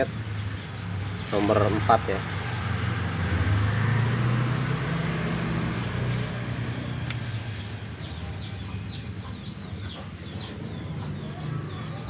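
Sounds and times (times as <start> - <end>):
metallic clink of a tool: 7.0 - 7.3.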